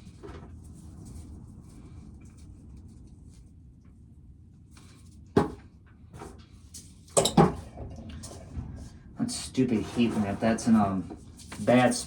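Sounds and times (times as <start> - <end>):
low steady rumble: 0.0 - 12.0
hard objects knocking and clattering: 7.2 - 9.0.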